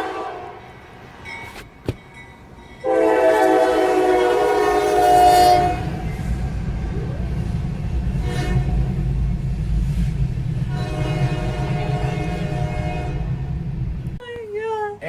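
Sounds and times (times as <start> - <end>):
horn blasts: 0.0 - 0.7, 2.8 - 9.2, 10.6 - 14.2
steady low rumble: 5.6 - 14.2.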